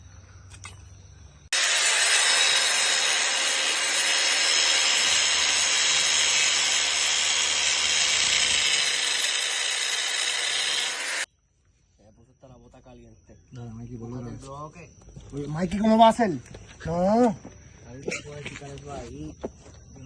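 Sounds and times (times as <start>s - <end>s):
angle grinder cutting steel: 1.5s - 11.3s.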